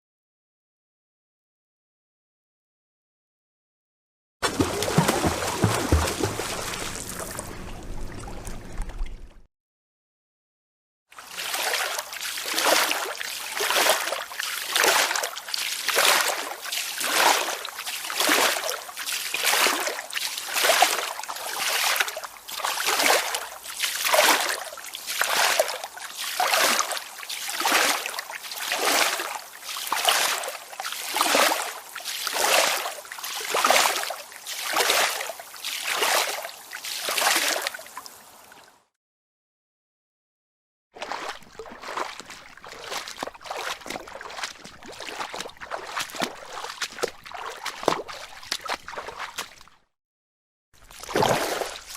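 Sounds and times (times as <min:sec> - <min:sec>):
swimmer splashing through water: 0:04.4 - 0:09.4, 0:41.0 - 0:49.7, 0:50.8 - 0:51.9.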